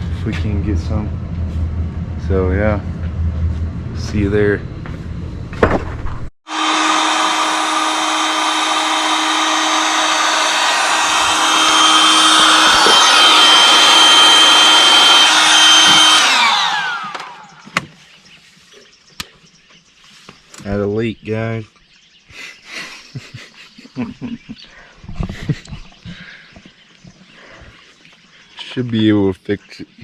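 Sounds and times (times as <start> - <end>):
small high-speed motor whirring: 6.5 - 17.7.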